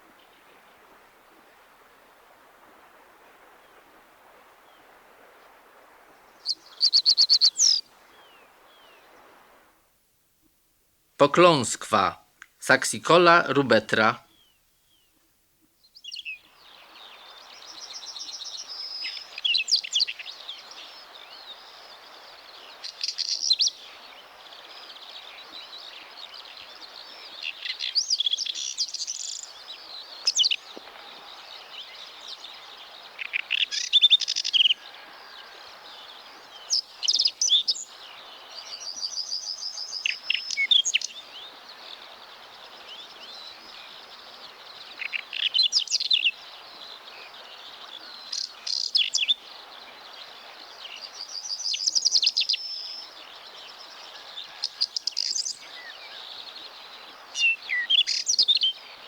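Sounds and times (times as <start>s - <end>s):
bird singing with trills: 38.7s - 41.2s, 48.1s - 49.4s, 57.4s - 58.8s.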